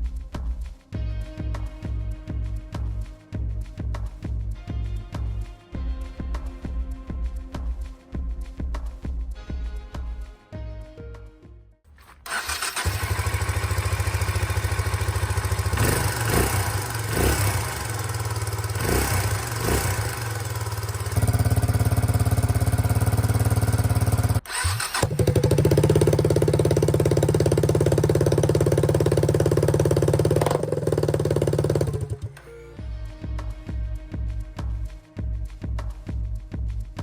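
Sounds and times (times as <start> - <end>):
motorcycle engine revving: 12.0 - 32.5.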